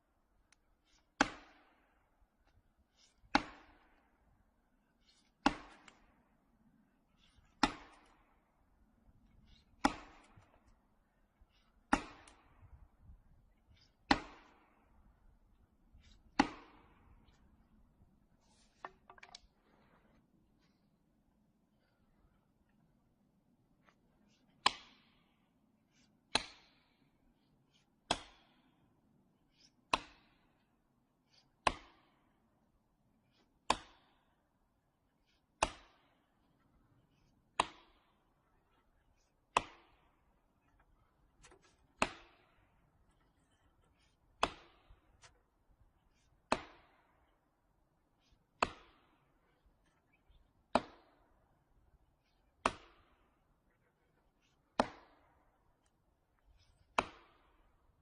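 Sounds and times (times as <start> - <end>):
heavy tool striking wood: 46.5 - 46.8.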